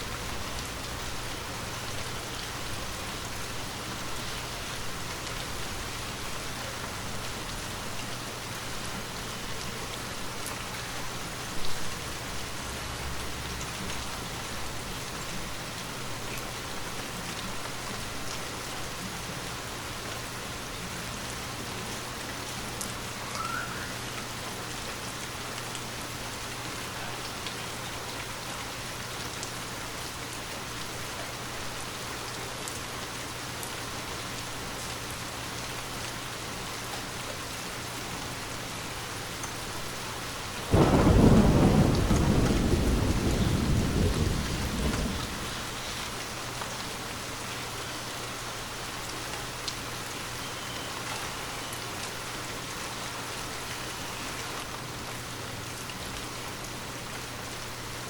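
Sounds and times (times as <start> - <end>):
rain falling: 0.0 - 58.0
thunder clap rumbling: 40.7 - 45.8.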